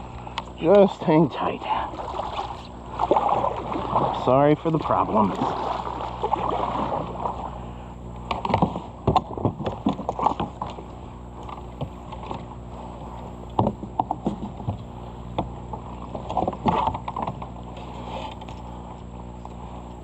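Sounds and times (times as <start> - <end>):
water moving around boat: 0.0 - 20.0
paddle knocking on kayak hull: 13.5 - 14.8.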